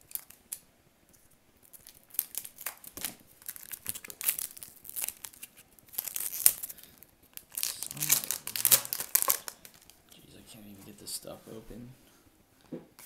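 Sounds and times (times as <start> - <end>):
foil wrapper tearing and crinkling: 0.0 - 0.6, 1.6 - 10.0.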